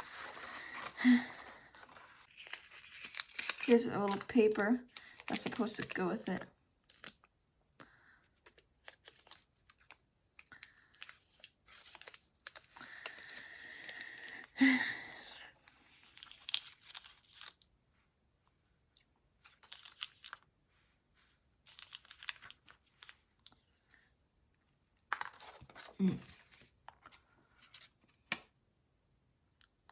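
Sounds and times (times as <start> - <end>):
packaging crinkling and tearing: 0.0 - 7.3, 8.4 - 14.5, 16.0 - 17.7, 19.4 - 20.5, 21.6 - 23.6, 25.1 - 27.9.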